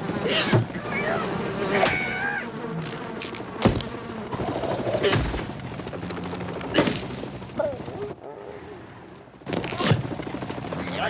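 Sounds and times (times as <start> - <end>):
steady fast buzzing: 0.0 - 7.6.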